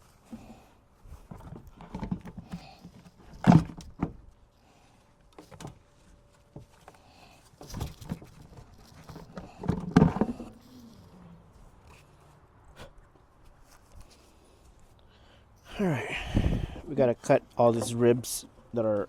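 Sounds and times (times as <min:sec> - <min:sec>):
speaker knocks and scraping: 0:01.2 - 0:04.2, 0:07.6 - 0:10.8.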